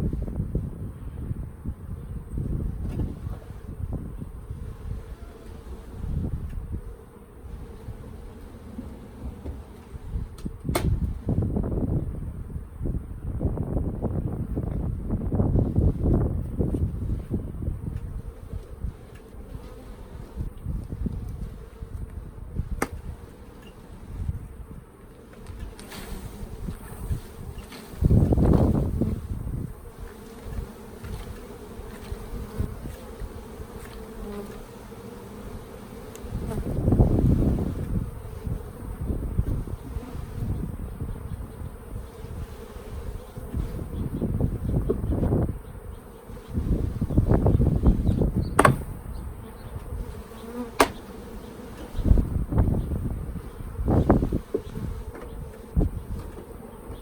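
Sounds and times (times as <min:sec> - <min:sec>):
bees buzzing: 0:01.9 - 0:12.0, 0:15.2 - 0:57.0
sharp knocks: 0:48.6 - 0:49.0, 0:50.8 - 0:51.0.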